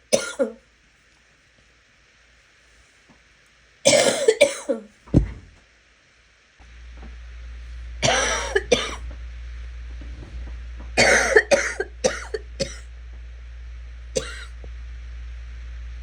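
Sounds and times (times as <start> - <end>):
person coughing: 0.1 - 0.6, 3.9 - 4.9, 8.0 - 9.0, 11.0 - 12.8, 14.2 - 14.5.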